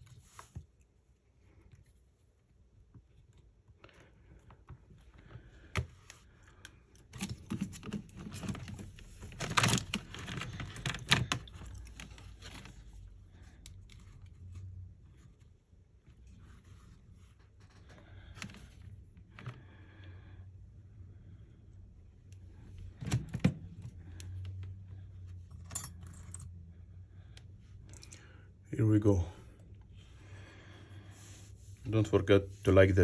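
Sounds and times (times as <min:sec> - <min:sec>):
rustling handling noise: 0:00.0 - 0:19.9.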